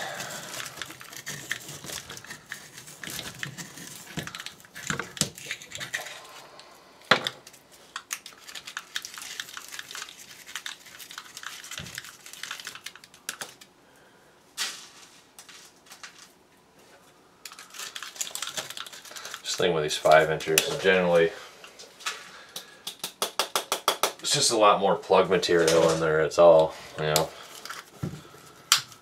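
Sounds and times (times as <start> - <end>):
paper and cardboard scraping: 0.4 - 4.9.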